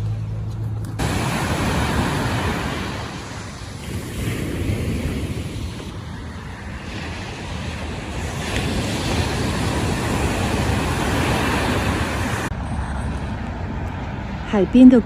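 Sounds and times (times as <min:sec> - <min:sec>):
ocean surf: 0:00.8 - 0:12.5
wind buffeting microphone: 0:01.0 - 0:15.0.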